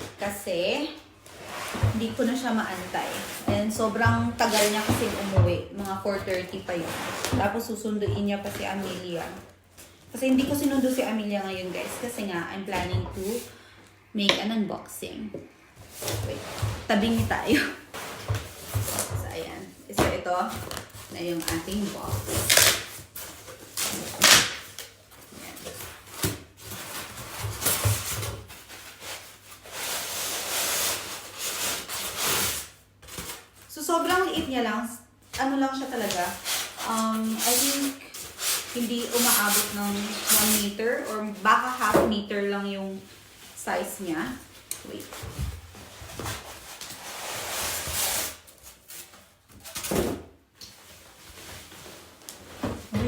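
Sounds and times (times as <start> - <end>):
cardboard rustling: 1.2 - 13.6, 15.8 - 34.7, 35.3 - 53.0
cardboard box scraping rustle: 1.3 - 7.7, 10.4 - 12.4
cardboard rubbing and scraping: 1.3 - 9.3, 35.8 - 42.0.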